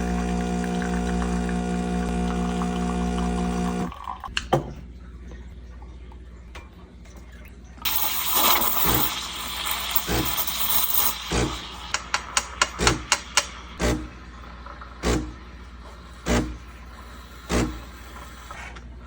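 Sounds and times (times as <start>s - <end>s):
coffee machine hissing: 0.0s - 4.0s, 7.8s - 18.6s.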